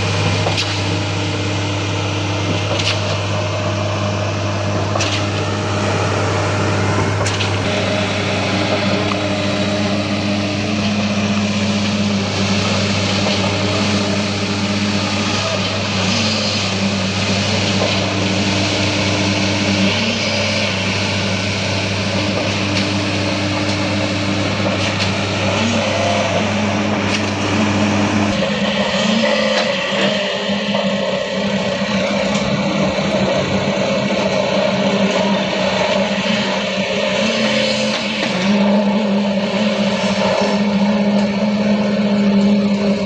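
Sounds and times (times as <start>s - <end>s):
diesel truck engine humming: 3.2s - 43.0s.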